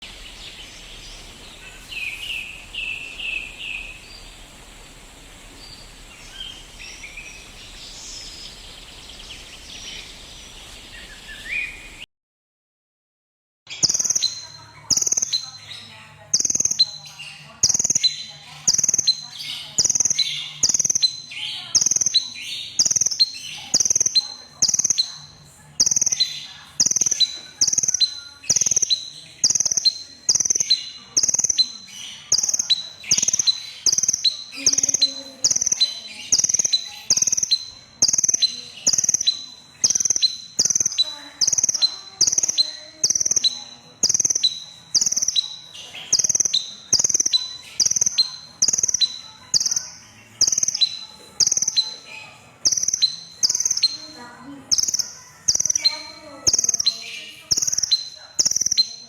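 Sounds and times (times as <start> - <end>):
bird high sharp chirps: 13.7 - 59.0.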